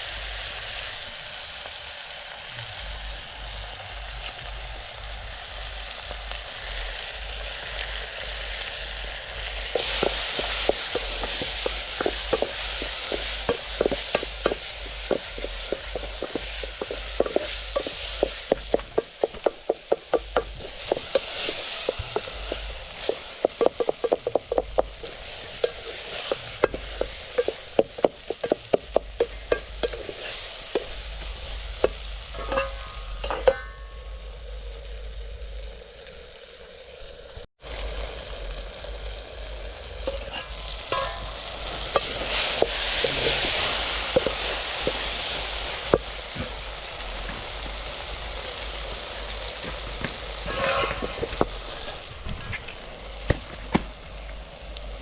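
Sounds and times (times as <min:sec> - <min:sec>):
food sizzling: 0:00.0 - 0:55.0
spoon clacking against pot: 0:40.9 - 0:41.4.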